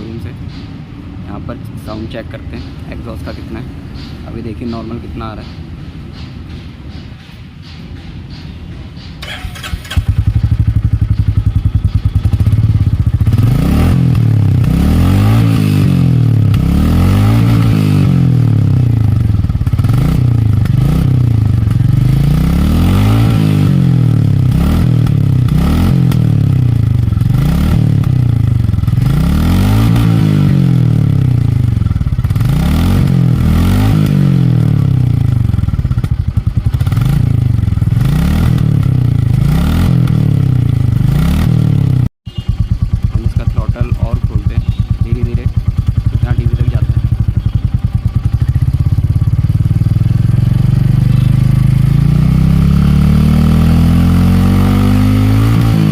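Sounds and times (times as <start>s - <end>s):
motorcycle engine revving: 9.2s - 55.9s.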